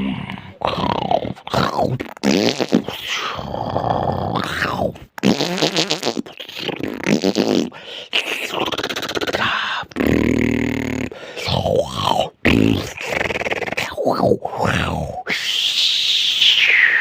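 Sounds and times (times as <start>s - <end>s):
person grunting and groaning: 0.0s - 2.1s, 2.8s - 5.1s, 7.7s - 15.7s
fluttering vocal rasp: 0.0s - 17.0s.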